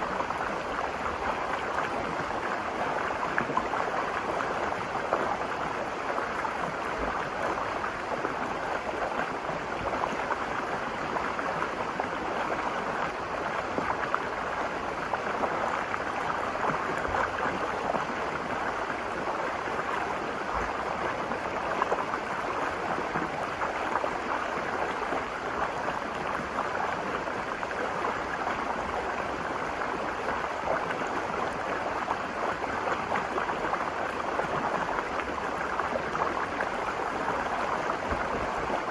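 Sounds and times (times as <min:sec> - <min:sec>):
water rushing over rocks: 0:00.0 - 0:38.9.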